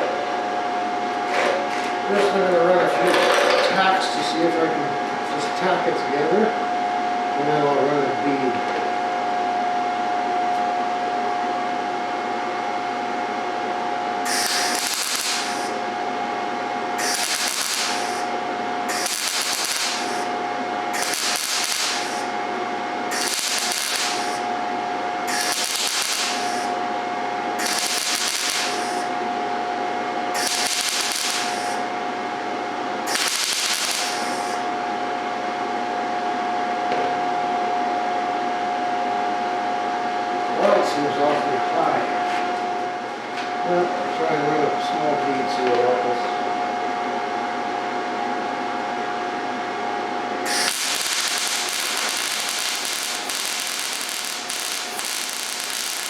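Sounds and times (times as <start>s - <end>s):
steady hum: 0.0s - 56.0s
welding arc crackle: 14.2s - 29.4s, 30.3s - 35.0s, 50.4s - 56.0s.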